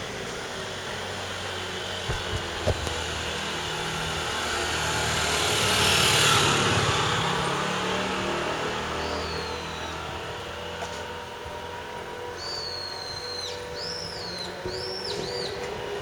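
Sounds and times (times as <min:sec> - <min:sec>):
motor vehicle passing: 0:00.4 - 0:16.0
short knocks: 0:02.0 - 0:03.2.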